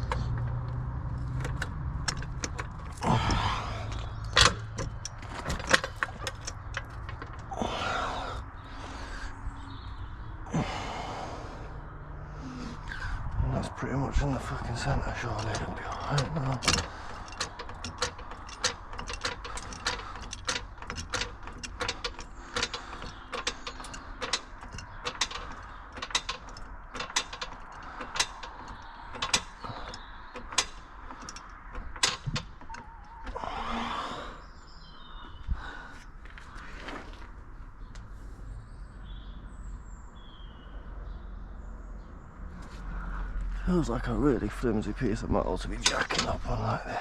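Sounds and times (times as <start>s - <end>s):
car jack clicking: 0.0s - 8.3s, 14.4s - 33.8s
scattered knocks: 14.8s - 33.4s.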